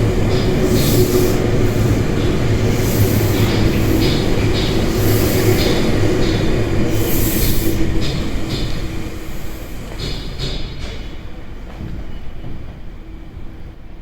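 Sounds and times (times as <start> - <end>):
train wheels rumbling on track: 0.0 - 14.0.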